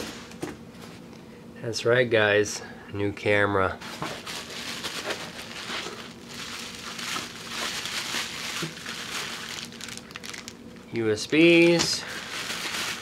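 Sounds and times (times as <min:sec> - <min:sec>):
packaging crinkling and rustling: 0:03.8 - 0:13.0.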